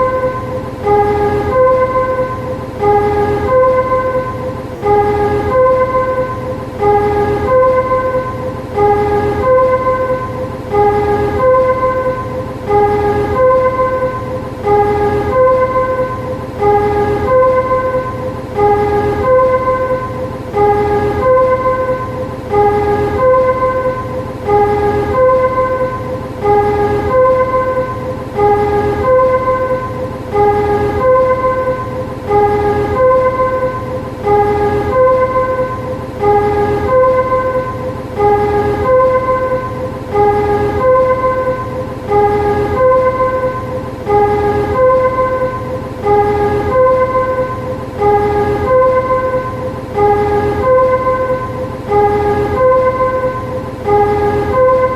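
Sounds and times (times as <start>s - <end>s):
steady low hum: 0.0s - 54.9s
two-note warning chime: 0.0s - 54.9s.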